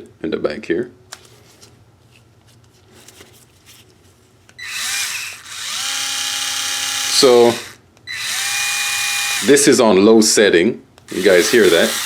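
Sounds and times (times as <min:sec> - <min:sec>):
cordless screwdriver motor whining: 0:04.6 - 0:09.6, 0:11.1 - 0:12.0.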